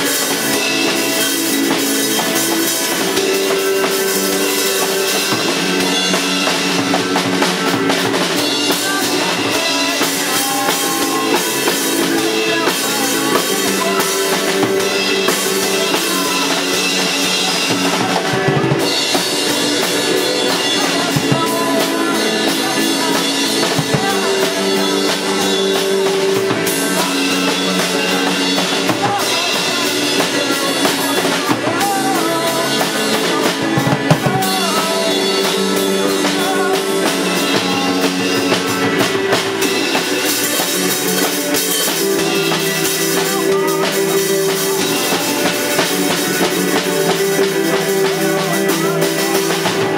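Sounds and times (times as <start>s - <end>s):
drum kit: 0.0s - 49.9s
live rock band instrumental: 0.0s - 49.9s.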